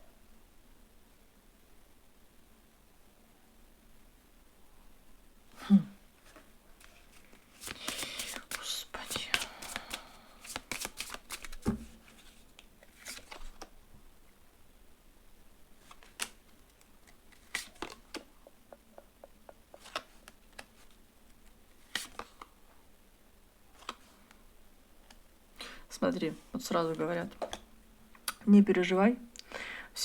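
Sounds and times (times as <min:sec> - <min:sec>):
cards clicking and tapping: 0:07.2 - 0:12.0, 0:17.0 - 0:20.8.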